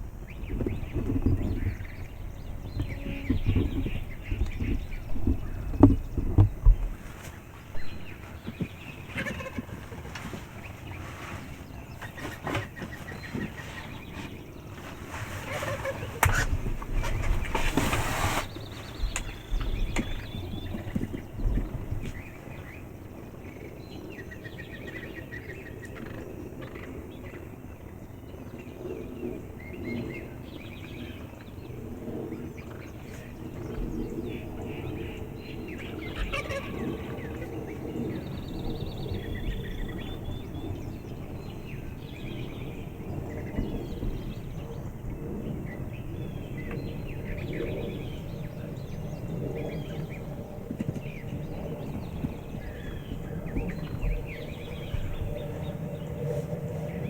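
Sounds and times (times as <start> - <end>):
turkeys yelping and clucking: 36.1 - 37.2.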